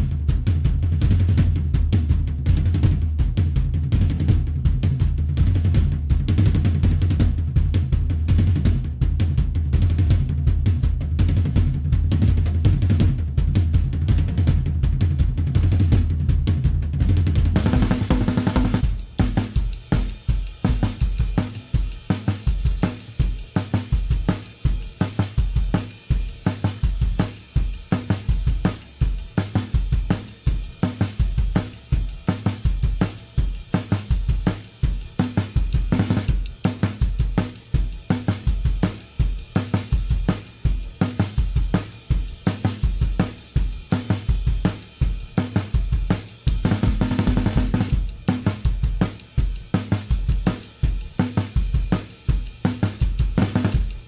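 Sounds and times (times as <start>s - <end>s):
heavy bass line: 0.0s - 37.0s
drum kit beat: 0.0s - 54.0s.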